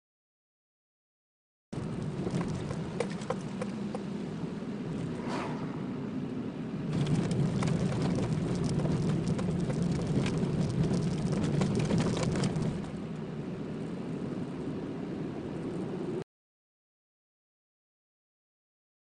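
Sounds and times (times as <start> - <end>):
tyres crackling on rough road: 1.8 - 5.2, 6.4 - 14.6
car road and engine rumble: 1.8 - 16.2.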